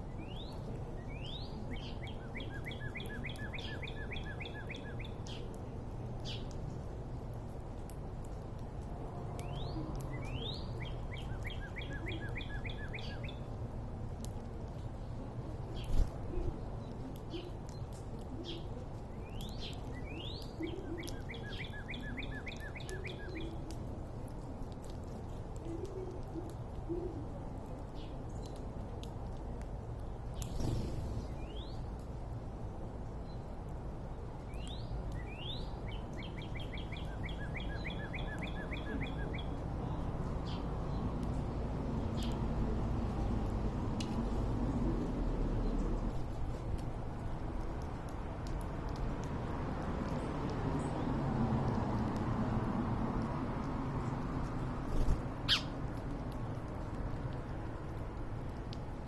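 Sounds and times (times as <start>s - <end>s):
songbird singing: 0.0s - 6.6s, 9.2s - 13.6s, 15.7s - 23.8s, 30.0s - 32.0s, 33.2s - 41.4s, 55.0s - 55.9s
soft low bird calls: 55.0s - 55.8s.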